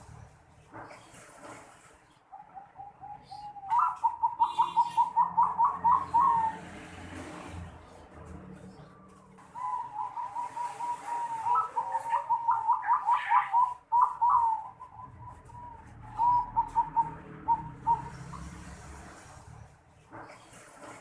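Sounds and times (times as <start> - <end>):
dove cooing: 2.3 - 7.5, 8.6 - 19.1.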